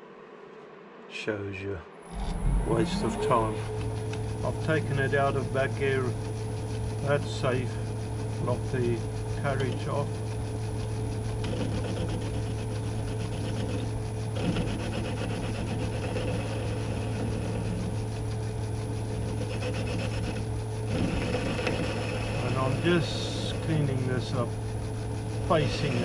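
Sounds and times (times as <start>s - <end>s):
lathe motor hum: 2.0s - 26.0s
cutting tool scraping metal: 11.3s - 18.2s, 19.1s - 24.5s.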